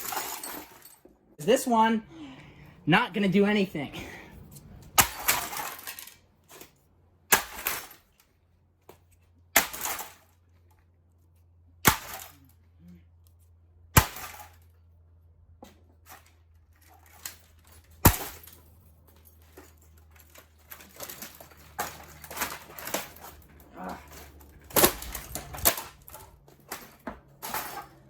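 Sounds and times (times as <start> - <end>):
broken computer parts clattering: 0.0 - 1.2, 4.9 - 6.8, 16.0 - 28.0
parts rattling and clinking: 0.0 - 1.4, 4.4 - 8.4, 9.0 - 28.0.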